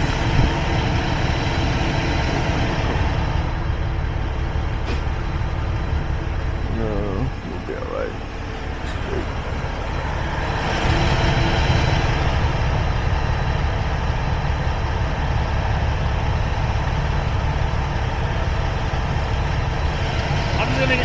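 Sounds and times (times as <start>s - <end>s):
truck engine rumbling: 0.0s - 21.0s.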